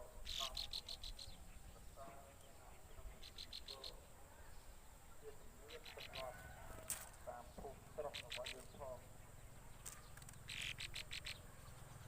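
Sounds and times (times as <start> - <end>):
lower bird calls: 0.0 - 12.0
small birds chirping: 0.0 - 12.0.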